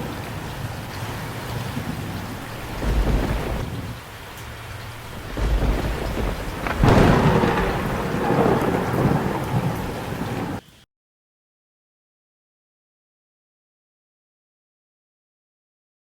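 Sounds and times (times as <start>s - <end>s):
heavy rain hissing: 0.0s - 10.8s
thunder rolling: 1.8s - 4.1s, 4.7s - 10.6s
loud thunderclap: 2.4s - 4.0s, 4.8s - 10.6s.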